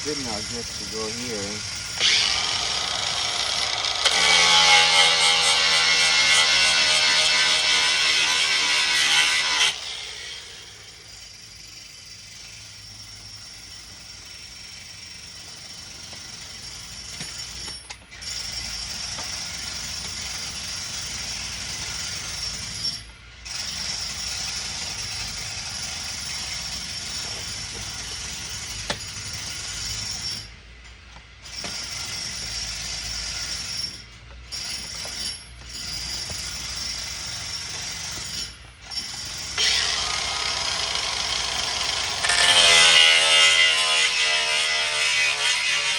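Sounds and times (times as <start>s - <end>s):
angle grinder cutting plastic: 2.0s - 11.0s, 38.9s - 45.9s.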